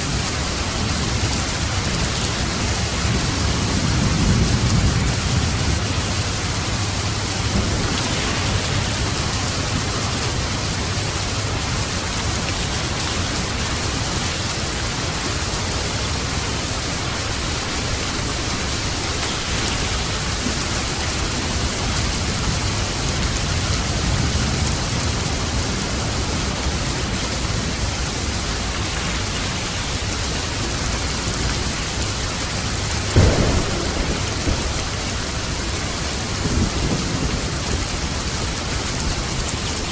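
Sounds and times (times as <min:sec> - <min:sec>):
steady rain: 0:00.0 - 0:39.9
low rumbling thunder: 0:00.1 - 0:39.9
loud thunder clap: 0:07.4 - 0:11.2, 0:33.0 - 0:37.9.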